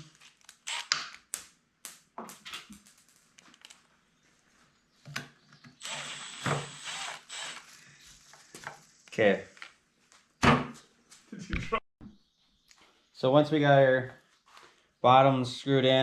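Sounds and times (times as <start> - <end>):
screw grinding as driven in: 0.5 - 1.0, 5.8 - 7.7.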